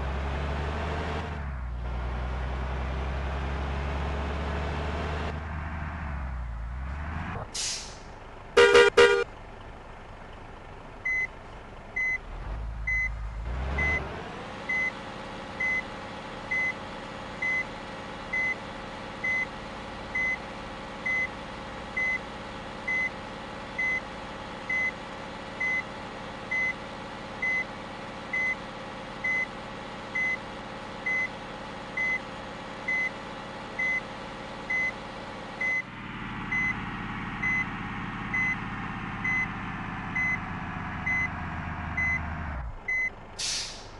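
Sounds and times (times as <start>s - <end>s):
engine running: 0.0s - 43.9s
reversing alarm beeping: 42.0s - 42.2s.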